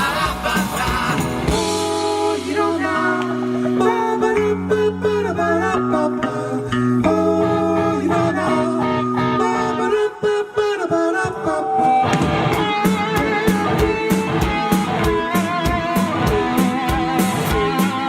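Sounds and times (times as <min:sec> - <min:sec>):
drums: 0:00.0 - 0:09.8, 0:11.2 - 0:18.0
rock band playing live: 0:00.0 - 0:18.0.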